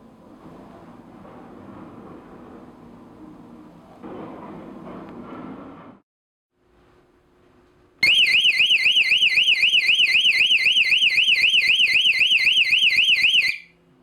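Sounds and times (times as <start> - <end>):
electronic alarm siren warbling: 8.0 - 13.7.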